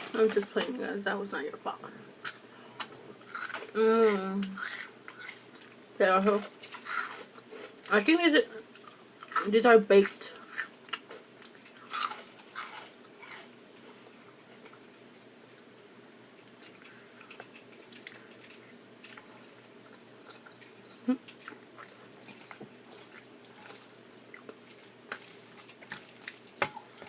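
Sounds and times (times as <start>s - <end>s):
wet chewing and mouth sounds: 8.6s - 27.0s.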